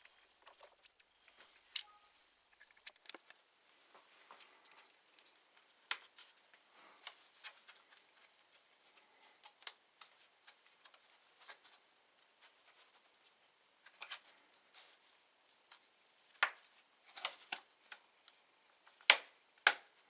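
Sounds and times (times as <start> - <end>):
small clicks and taps of parts: 5.2 - 8.4, 9.0 - 11.8.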